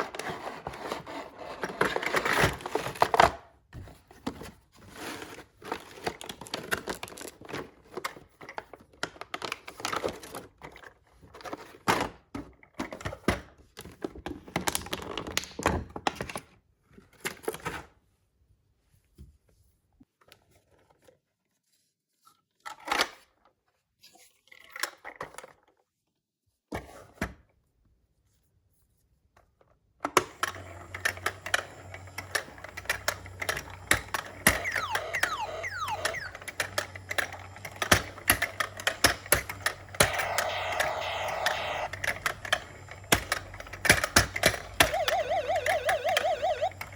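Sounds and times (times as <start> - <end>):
sliding tones: 34.6 - 36.9, 44.8 - 46.9.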